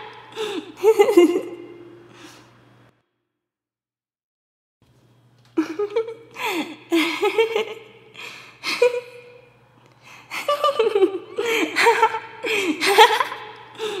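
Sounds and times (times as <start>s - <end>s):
person giggling: 0.0s - 1.9s, 5.6s - 9.5s, 10.3s - 14.0s.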